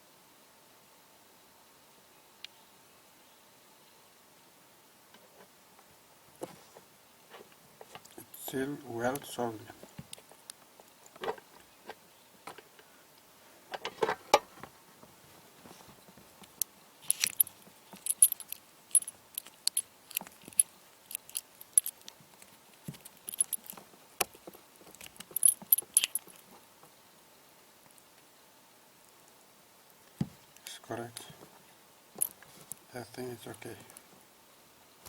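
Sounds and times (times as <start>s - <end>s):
metal connectors clicking and clinking: 16.4s - 26.5s.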